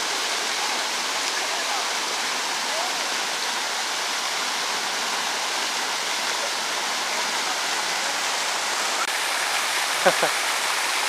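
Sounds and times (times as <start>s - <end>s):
running water rushing: 0.0s - 11.0s.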